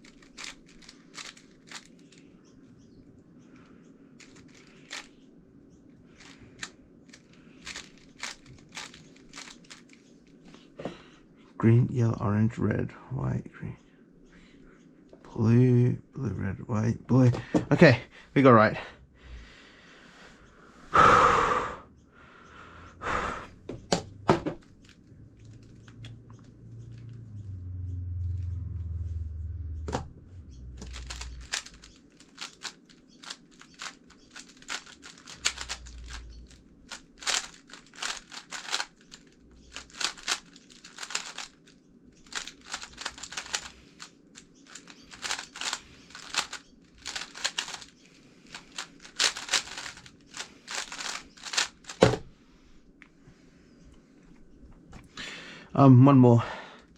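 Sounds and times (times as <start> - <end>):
speed cube plastic clicking: 0.0 - 2.2, 4.2 - 5.1, 6.1 - 10.1, 30.8 - 52.2
low rumble of handling: 0.0 - 13.0, 23.5 - 55.1
knocks of handling: 23.7 - 25.0.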